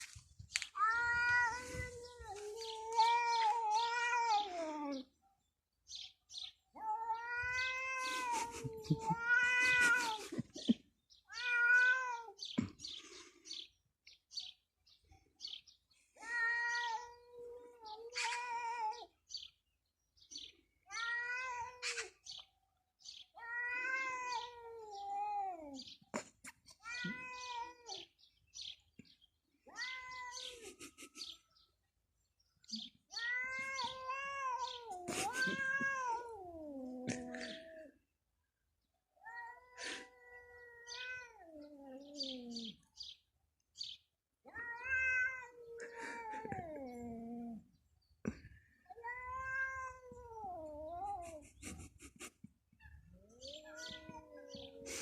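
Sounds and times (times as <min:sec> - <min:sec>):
cat meowing: 0:00.8 - 0:05.0, 0:11.3 - 0:12.4, 0:29.7 - 0:30.6, 0:33.1 - 0:37.9, 0:39.2 - 0:42.8, 0:44.5 - 0:47.6, 0:49.0 - 0:51.4, 0:53.1 - 0:55.0.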